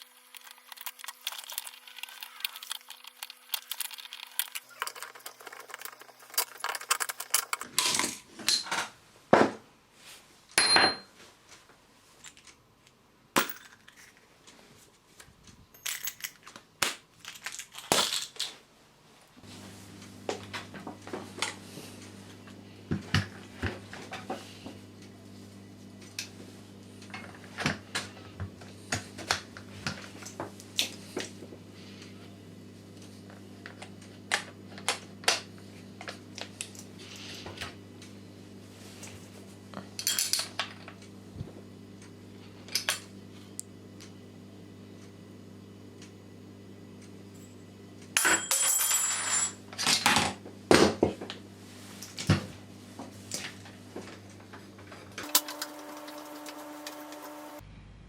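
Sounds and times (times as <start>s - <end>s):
steady low hum: 19.2s - 48.3s, 49.6s - 58.0s.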